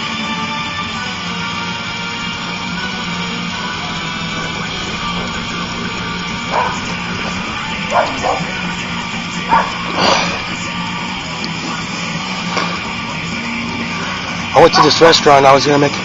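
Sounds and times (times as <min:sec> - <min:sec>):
guitar-driven metal music: 0:00.0 - 0:16.0
dog barking: 0:06.2 - 0:10.4.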